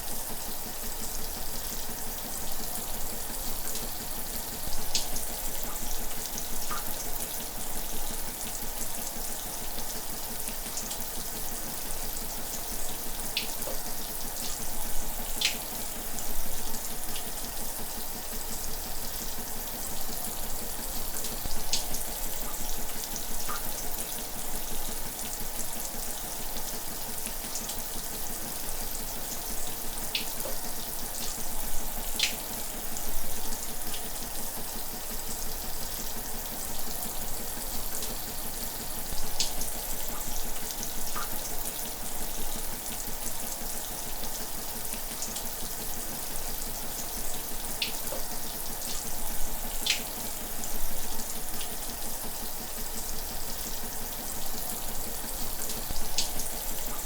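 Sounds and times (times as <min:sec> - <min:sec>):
water splashes and drips: 0:03.7 - 0:07.0, 0:13.3 - 0:16.2, 0:30.0 - 0:33.0, 0:38.0 - 0:42.0, 0:47.5 - 0:52.4, 0:54.1 - 0:57.0
shower water spraying: 0:47.4 - 0:52.0.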